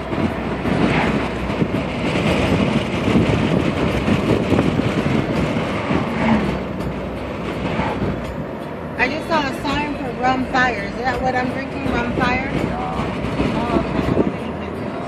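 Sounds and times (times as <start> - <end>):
vehicle road and engine rumble: 0.0 - 15.0.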